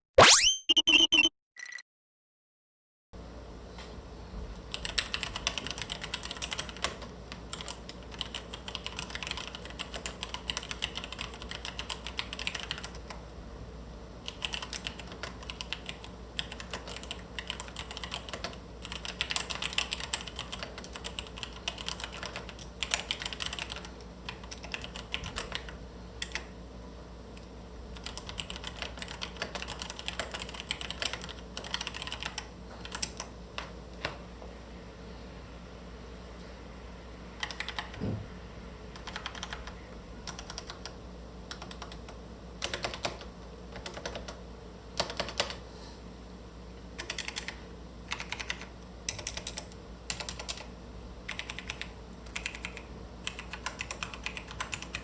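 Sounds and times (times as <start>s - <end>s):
mechanical keyboard typing: 4.7s - 13.2s, 14.2s - 26.5s, 27.4s - 33.7s, 37.4s - 38.0s, 38.9s - 44.4s, 45.0s - 45.6s, 47.0s - 50.7s, 51.3s - 55.0s.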